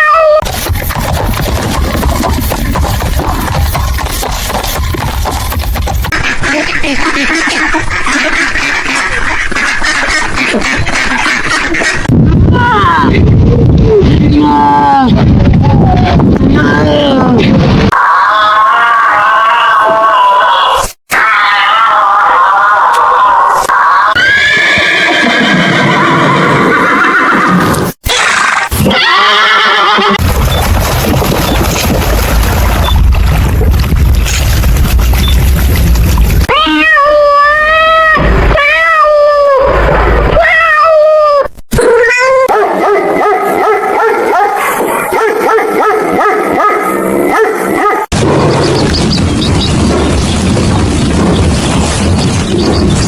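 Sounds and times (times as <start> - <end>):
horse neighing: 24.1 - 27.8, 28.9 - 30.2
cat meowing: 36.5 - 39.6
dog yapping: 42.1 - 48.1.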